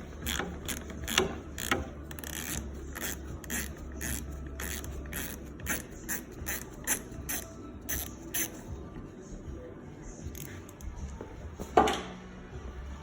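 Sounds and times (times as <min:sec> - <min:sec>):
socket ratchet clicking: 0:00.0 - 0:08.6.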